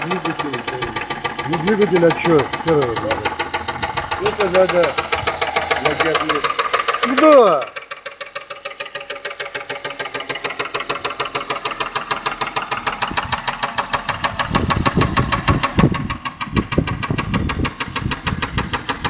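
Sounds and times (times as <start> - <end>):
engine running with knocking: 0.0 - 19.0
uneven low rumble: 2.5 - 7.0.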